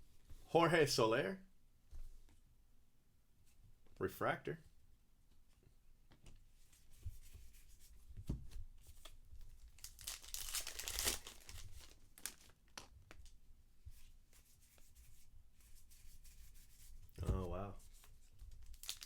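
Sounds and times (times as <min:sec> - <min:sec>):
wrapper tearing and crinkling: 0:09.7 - 0:13.2, 0:18.6 - 0:19.0.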